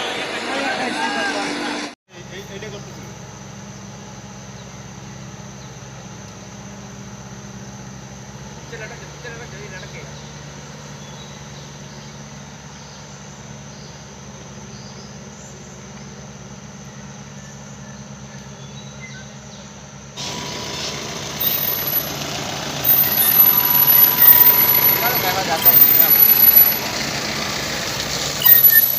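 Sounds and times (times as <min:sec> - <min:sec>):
outdoor noise: 0:00.0 - 0:28.9
engine idling: 0:02.1 - 0:28.9
high-pitched chirping: 0:21.4 - 0:22.2, 0:22.8 - 0:26.9, 0:28.4 - 0:28.9.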